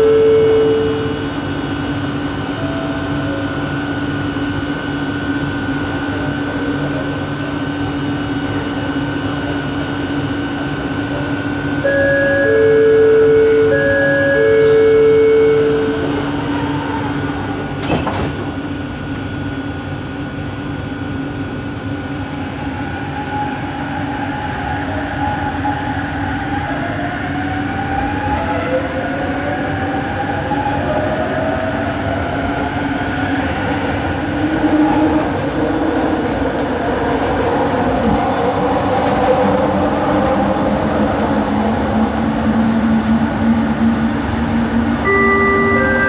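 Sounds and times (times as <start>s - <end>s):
high motor whine: 0.0s - 20.4s, 31.6s - 46.0s
metro car rumble: 0.0s - 46.0s.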